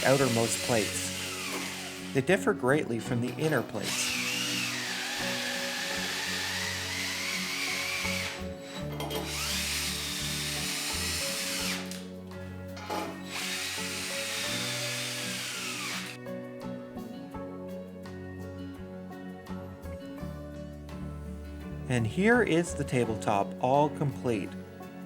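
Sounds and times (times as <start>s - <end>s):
electric drill whining: 0.0s - 12.2s, 12.8s - 16.2s
music: 0.0s - 25.0s.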